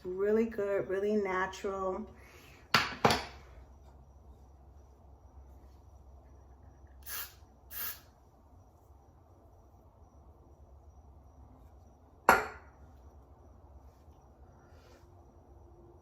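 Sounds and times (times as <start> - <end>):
short hissing puffs: 7.0 - 8.1.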